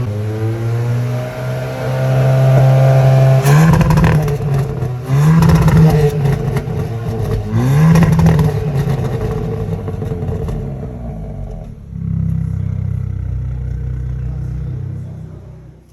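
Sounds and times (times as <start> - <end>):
car engine revving: 0.0 - 15.9
exhaust crackling pops: 2.2 - 14.2.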